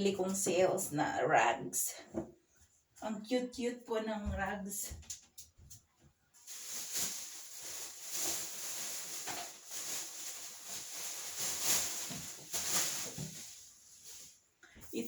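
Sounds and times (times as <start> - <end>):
rugs rustling while handled: 6.4 - 14.4.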